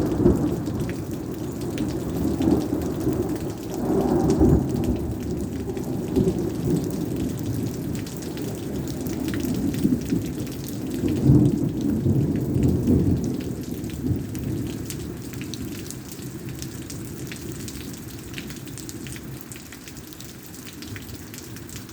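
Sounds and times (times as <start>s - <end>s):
thunder rumbling: 0.0s - 14.8s
rain pattering: 0.0s - 21.9s.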